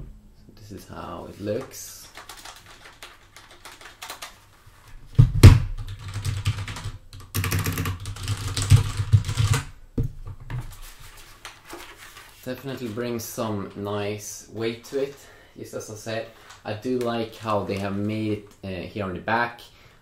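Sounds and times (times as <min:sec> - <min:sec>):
rapid key clacking: 0:02.0 - 0:04.4.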